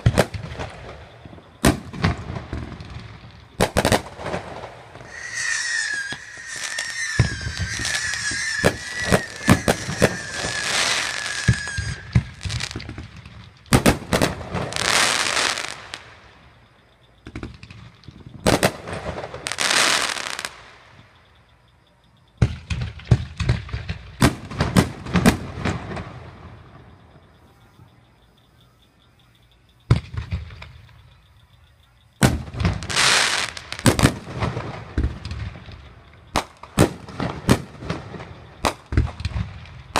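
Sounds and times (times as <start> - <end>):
fireworks bangs and crackling: 0.0 - 16.4, 17.2 - 21.1, 22.4 - 26.9, 29.9 - 31.0, 32.2 - 39.9
firework whistle: 4.8 - 13.0.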